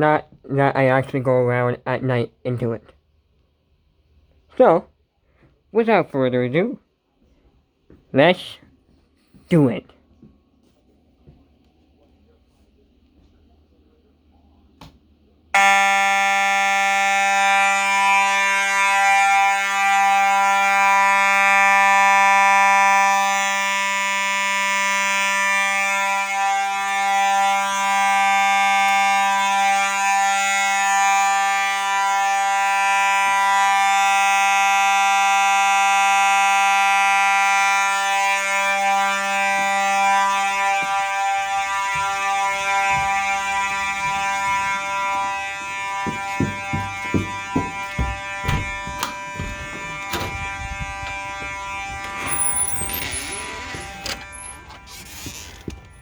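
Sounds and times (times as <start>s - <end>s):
fire alarm horn: 15.5s - 56.0s.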